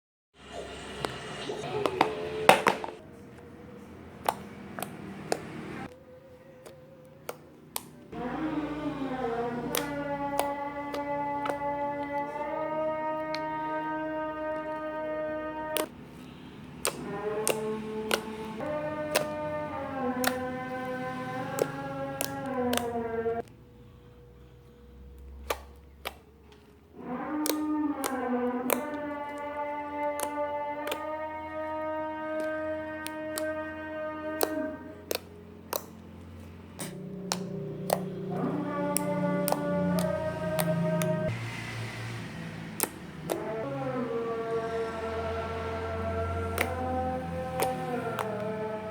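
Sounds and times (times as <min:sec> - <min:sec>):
background music: 0:00.4 - 0:48.9
slime crackling pops: 0:09.6 - 0:12.4, 0:15.6 - 0:16.2, 0:16.8 - 0:23.0, 0:27.3 - 0:31.2, 0:32.2 - 0:33.7, 0:34.3 - 0:36.0, 0:36.8 - 0:41.1, 0:42.8 - 0:43.5, 0:46.6 - 0:46.9, 0:47.5 - 0:48.5.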